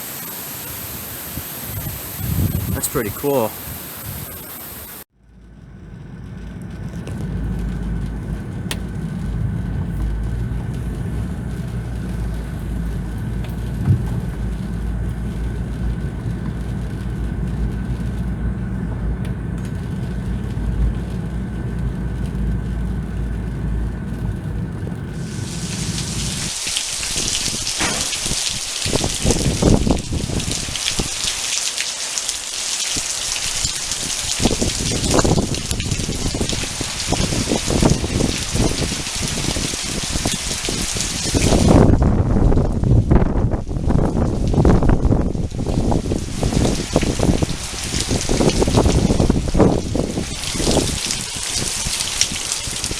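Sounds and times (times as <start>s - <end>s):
wind buffeting microphone: 0.0s - 31.4s, 33.0s - 52.9s
heavy rain pouring: 0.0s - 52.9s.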